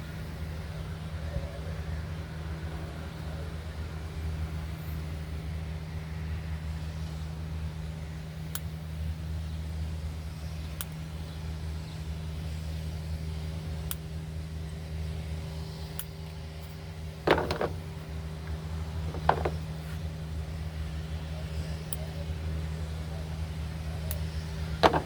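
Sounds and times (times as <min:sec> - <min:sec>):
steady low hum: 0:00.0 - 0:25.0
clicking and scraping: 0:17.3 - 0:20.0.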